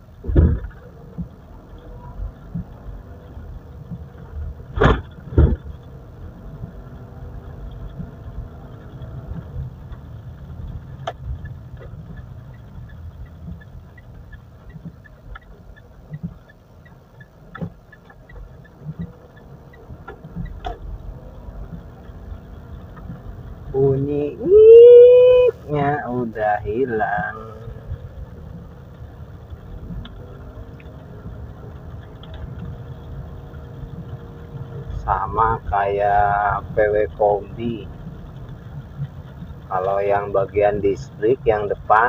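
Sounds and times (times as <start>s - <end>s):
car engine and road rumble: 0.0s - 42.0s
loud thumps: 0.2s - 0.7s, 4.7s - 5.8s.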